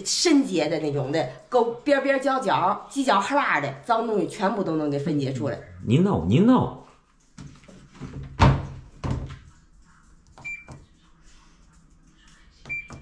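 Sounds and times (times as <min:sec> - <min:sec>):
washing machine door thump: 0:08.0 - 0:09.4.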